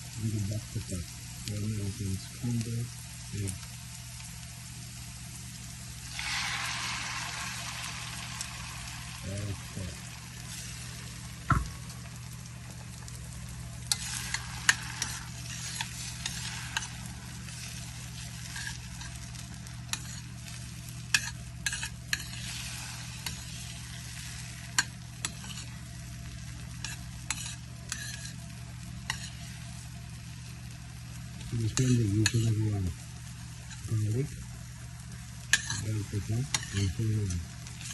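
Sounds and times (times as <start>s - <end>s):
egg sizzling in frying pan: 0.0s - 37.9s
low steady hum: 0.0s - 37.9s
knock on pan: 11.5s - 11.8s
utensil scraping pan: 13.9s - 19.3s, 19.9s - 20.3s, 21.1s - 25.8s, 26.8s - 28.4s, 29.1s - 29.6s, 35.5s - 37.9s.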